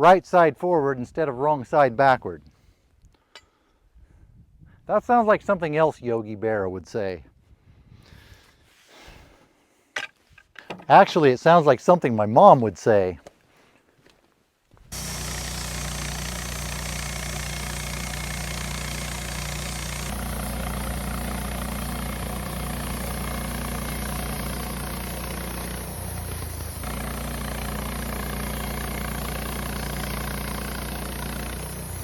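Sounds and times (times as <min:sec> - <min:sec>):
bandsaw sawmill cutting log: 0:14.9 - 0:32.0.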